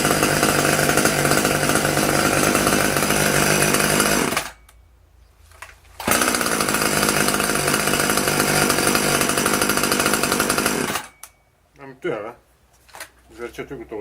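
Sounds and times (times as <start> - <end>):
chainsaw running: 0.0 - 4.7, 6.0 - 11.3.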